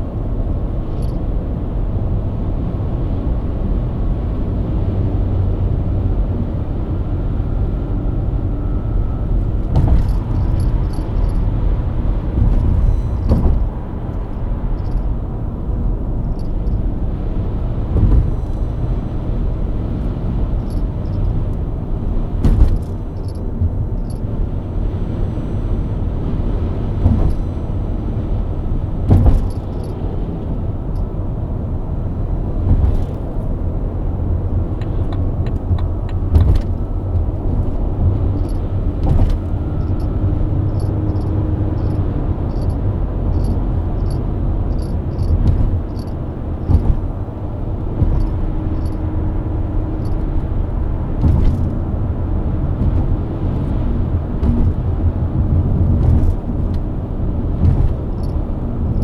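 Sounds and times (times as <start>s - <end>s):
car engine cruising: 0.0s - 59.0s
road rumble: 0.0s - 59.0s
short sharp thumps: 9.6s - 11.4s, 12.3s - 13.9s, 22.4s - 24.2s, 29.1s - 29.9s, 43.4s - 47.2s, 48.0s - 49.0s, 51.2s - 51.8s, 52.8s - 53.8s, 54.4s - 54.8s
faint regular ticking: 12.5s - 15.1s, 40.7s - 47.1s, 48.0s - 49.0s.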